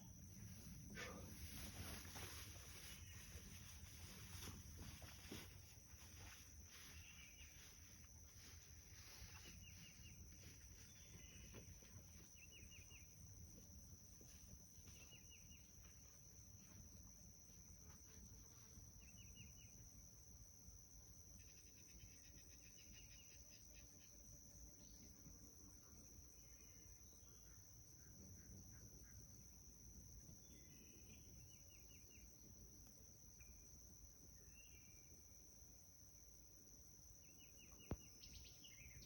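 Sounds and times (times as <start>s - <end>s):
cricket drone: 0.0s - 39.0s
quick insect chirps: 37.1s - 39.0s.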